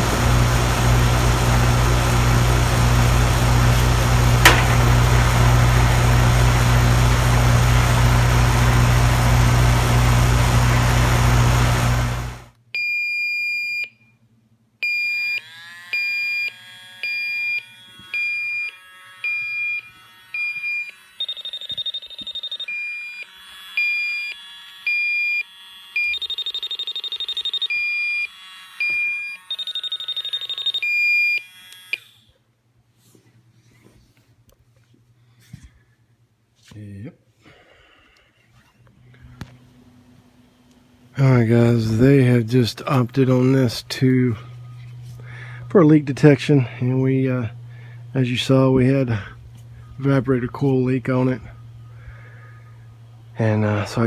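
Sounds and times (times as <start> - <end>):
air conditioner humming: 0.0 - 12.5, 39.0 - 54.0
leak detector beeping: 0.0 - 14.0, 14.8 - 32.2.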